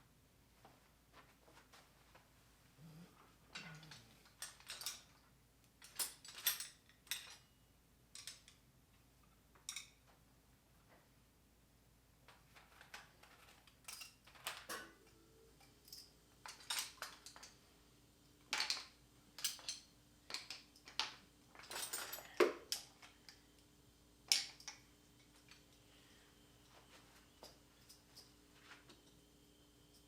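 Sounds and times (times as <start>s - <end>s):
metal tools clinking in toolbox: 3.5s - 5.2s, 5.8s - 7.5s, 12.9s - 15.0s, 18.6s - 23.2s.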